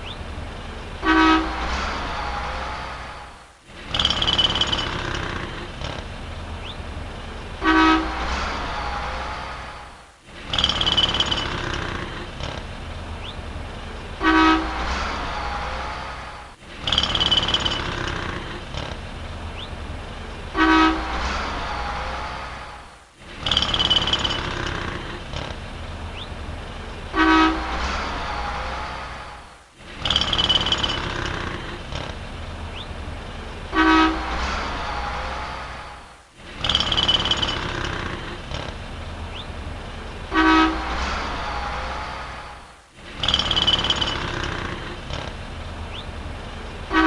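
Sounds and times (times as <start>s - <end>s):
city street traffic: 0.0s - 47.0s
car horn honk: 1.0s - 1.7s, 7.6s - 8.4s, 14.2s - 14.9s, 20.5s - 21.3s, 27.1s - 27.8s, 33.7s - 34.4s, 40.3s - 42.1s.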